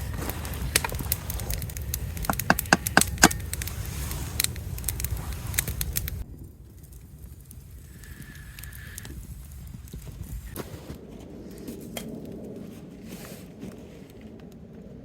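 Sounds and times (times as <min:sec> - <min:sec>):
sharp crackles and snaps: 0:00.0 - 0:10.6
loud cracks: 0:00.7 - 0:03.8.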